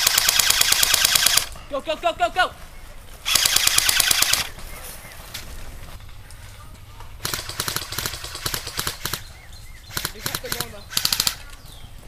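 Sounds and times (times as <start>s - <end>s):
airsoft guns firing: 0.0s - 1.5s, 3.3s - 4.5s, 7.2s - 9.3s, 9.9s - 11.4s.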